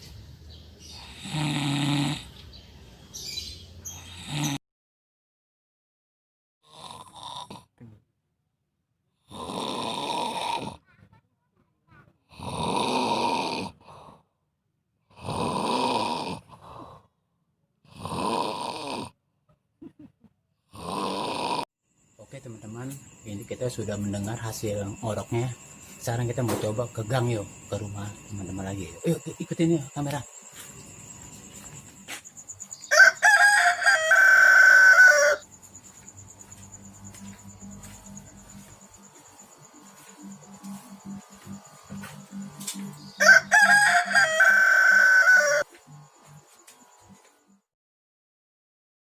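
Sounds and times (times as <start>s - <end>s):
person snoring: 0.8s - 2.4s, 3.9s - 4.6s, 6.6s - 8.0s, 9.2s - 10.9s, 12.3s - 14.3s, 15.0s - 17.1s, 17.8s - 19.2s, 20.7s - 22.4s
rooster crowing: 32.7s - 35.5s, 42.7s - 45.8s.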